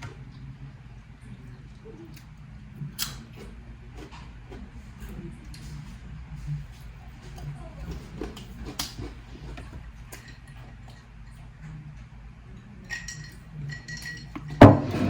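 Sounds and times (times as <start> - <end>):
chewing crackers: 1.3 - 5.9, 6.5 - 11.5
crackers and dishware clinking: 7.2 - 11.8, 12.8 - 15.0.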